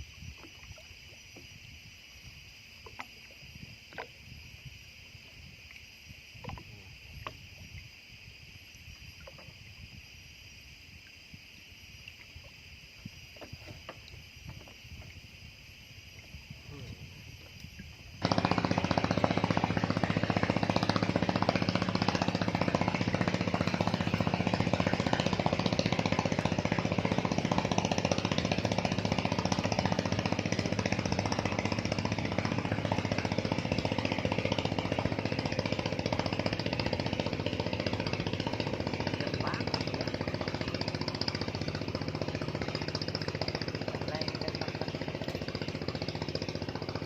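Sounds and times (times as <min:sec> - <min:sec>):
steady low hum: 0:14.1 - 0:47.0
fast mechanical rattle: 0:18.2 - 0:47.0.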